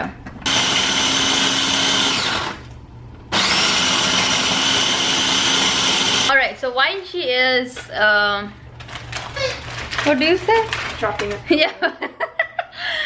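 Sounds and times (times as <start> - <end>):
electric food chopper whine: 0.5 - 6.3.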